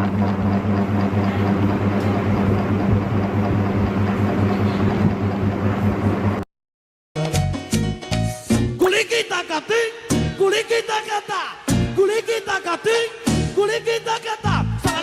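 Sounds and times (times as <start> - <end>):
low droning hum with throb: 0.0 - 6.4
choppy rhythmic beats: 7.2 - 15.0.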